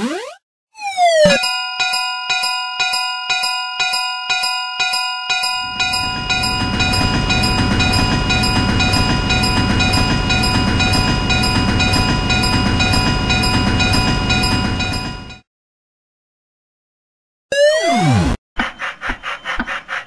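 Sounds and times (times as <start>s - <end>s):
crossing bell ringing: 1.3s - 15.4s
train wheels rumbling and clattering: 5.7s - 15.4s.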